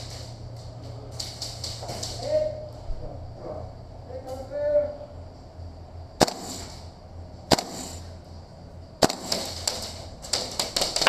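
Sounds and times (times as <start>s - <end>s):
airsoft gun shots: 6.2s - 6.7s, 7.5s - 7.9s, 9.0s - 9.6s
hiss after shots: 6.2s - 6.8s.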